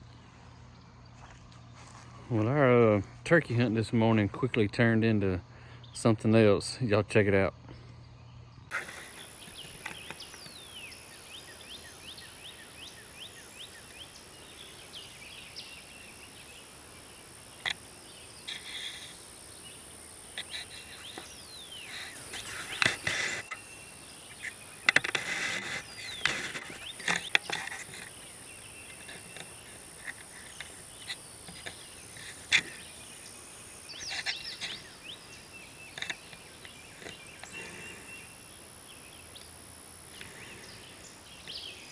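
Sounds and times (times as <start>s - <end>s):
wild birds chirping: 0.0s - 41.9s
steady hiss: 8.7s - 41.9s.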